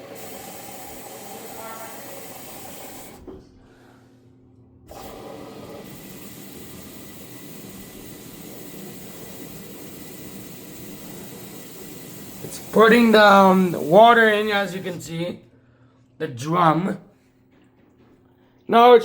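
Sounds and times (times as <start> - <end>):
water rushing into washing machine: 0.0 - 3.3, 4.9 - 15.2.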